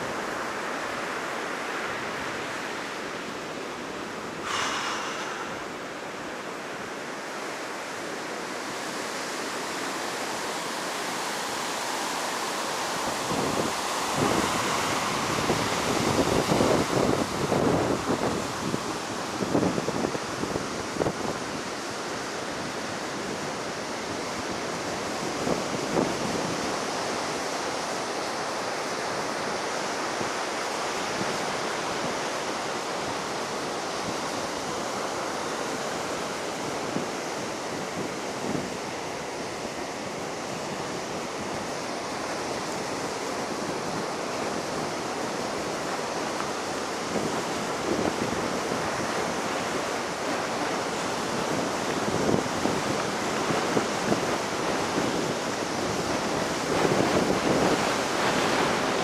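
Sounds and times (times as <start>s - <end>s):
ocean surf breaking: 0.0s - 59.0s
wind on microphone: 4.2s - 7.6s, 13.0s - 27.3s, 36.3s - 59.0s.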